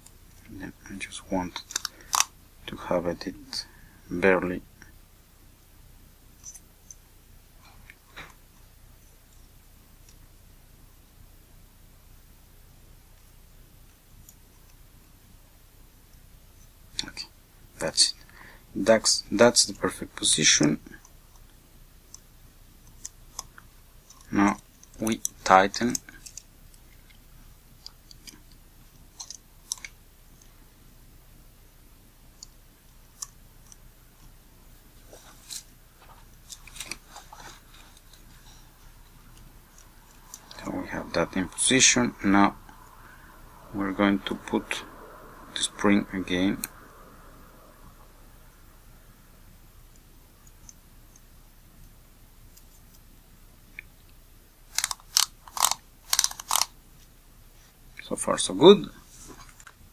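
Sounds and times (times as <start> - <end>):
small screwdriver clicks and scrapes: 54.7 - 56.7.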